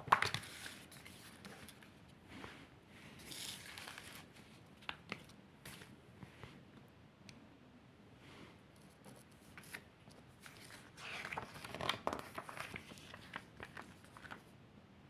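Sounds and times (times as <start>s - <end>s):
small clicks and crinkles: 8.8s - 14.5s
packaging rustling and tearing: 10.4s - 14.4s.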